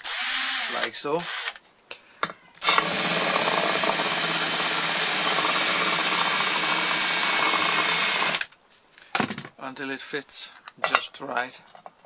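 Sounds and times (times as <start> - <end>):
power drill running: 0.0 - 1.6, 2.6 - 8.5.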